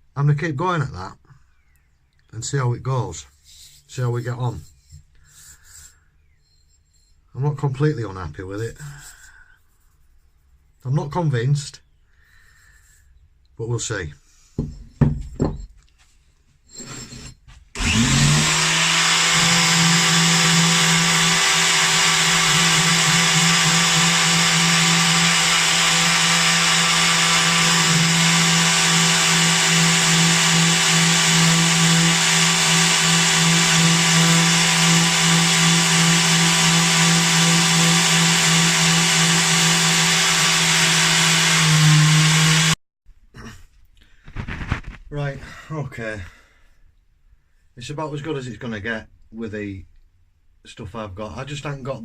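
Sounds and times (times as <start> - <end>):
electric sander sanding steel: 17.8 - 42.8.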